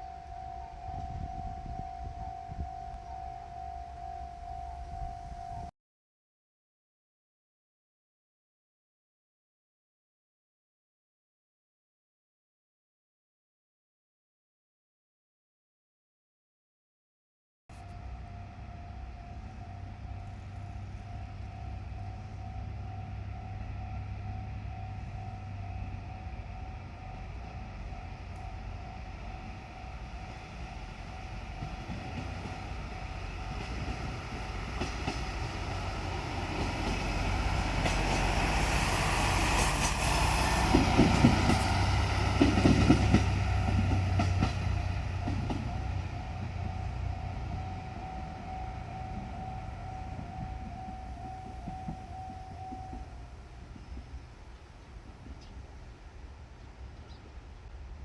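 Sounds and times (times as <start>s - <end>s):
crossing warning bell ringing: 0.0s - 5.7s, 17.8s - 54.4s
diesel railcar engine: 0.0s - 5.7s, 17.7s - 58.0s
wheel clacks over rail joints: 39.5s - 46.8s.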